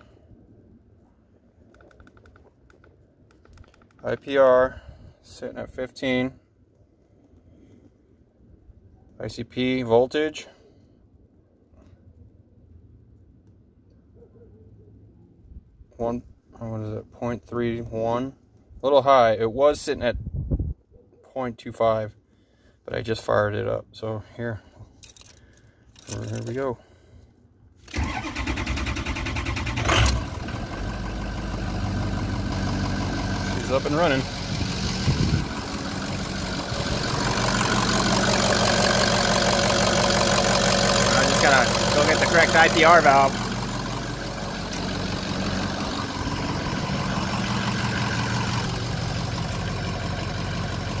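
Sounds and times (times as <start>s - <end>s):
diesel engine starting and idling: 27.8s - 51.0s
diesel starter cranking: 27.9s - 51.0s.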